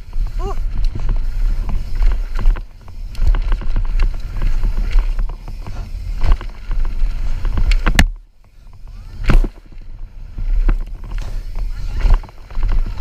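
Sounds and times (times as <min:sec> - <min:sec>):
bike rattling and knocking: 0:00.0 - 0:13.0
wind rumble on microphone: 0:00.0 - 0:13.0
bike landing thud: 0:09.0 - 0:09.8, 0:10.6 - 0:12.3.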